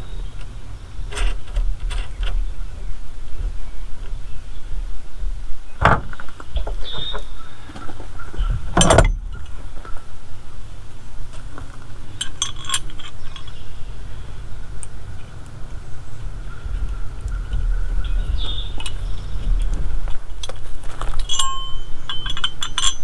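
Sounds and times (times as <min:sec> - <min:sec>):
metal tools clinking: 0:11.3 - 0:15.6, 0:19.6 - 0:23.0.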